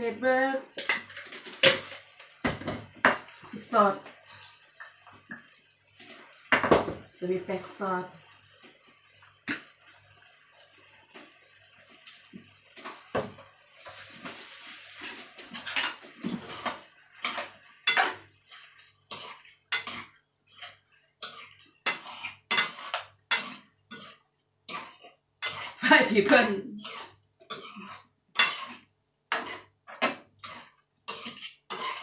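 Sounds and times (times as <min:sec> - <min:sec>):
utensil scraping a pan: 0:13.8 - 0:32.0.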